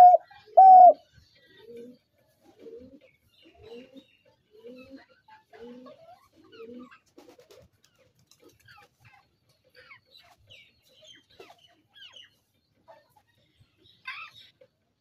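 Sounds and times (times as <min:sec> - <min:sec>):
dove cooing: 0:00.0 - 0:06.9
small birds chirping: 0:00.0 - 0:14.7.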